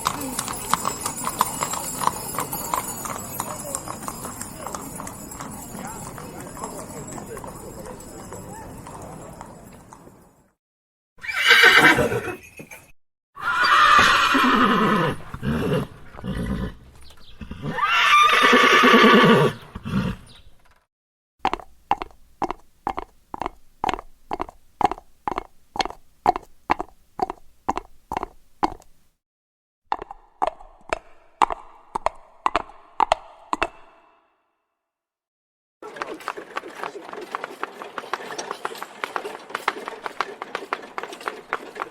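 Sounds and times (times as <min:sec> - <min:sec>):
hoofbeats clip-clopping: 0:00.0 - 0:10.5, 0:21.4 - 0:29.1, 0:29.9 - 0:33.9, 0:35.8 - 0:41.9
horse whinnying: 0:11.2 - 0:12.6, 0:13.4 - 0:16.8, 0:17.4 - 0:20.4.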